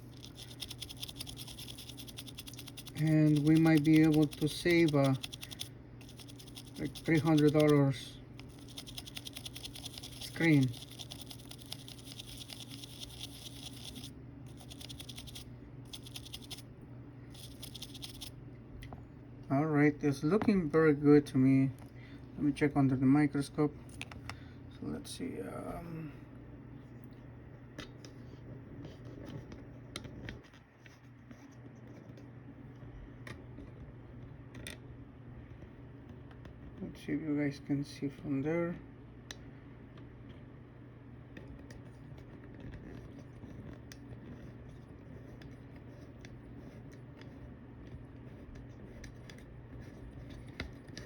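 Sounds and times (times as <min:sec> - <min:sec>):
small objects clicking and scratching: 0:00.0 - 0:07.8, 0:08.4 - 0:16.6, 0:17.4 - 0:18.3
small brush scrubbing circuit board: 0:00.0 - 0:16.6, 0:17.3 - 0:18.3
steady low hum: 0:00.0 - 0:51.0.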